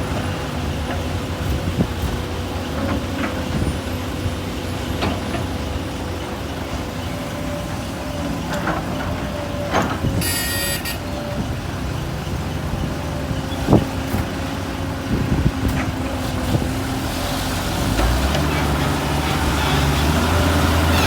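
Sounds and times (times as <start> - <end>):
heavy diesel engines running: 0.0 - 21.0.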